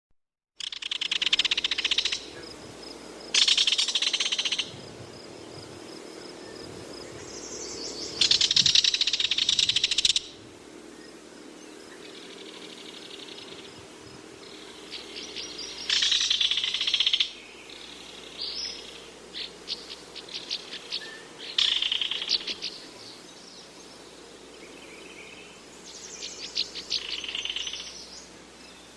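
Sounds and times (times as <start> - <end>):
kingfisher rattling call: 0.6 - 2.3, 3.4 - 4.7, 8.2 - 10.4, 15.8 - 17.4, 21.5 - 22.6.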